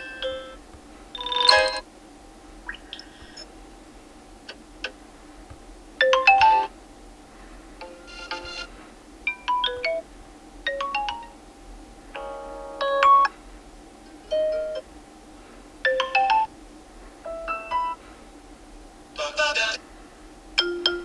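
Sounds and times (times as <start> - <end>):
electronic chime ringtone: 1.2 - 1.8, 8.1 - 8.7.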